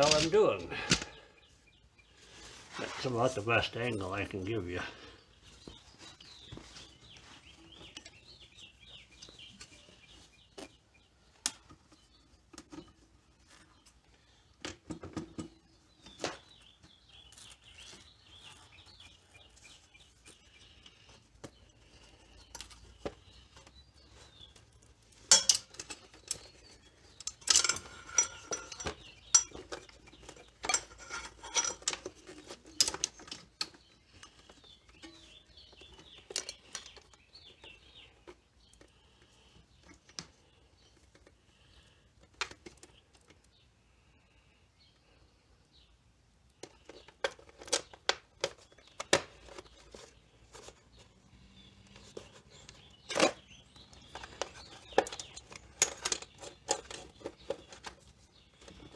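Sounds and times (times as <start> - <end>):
metallic clinking and rattles: 24.6 - 35.3.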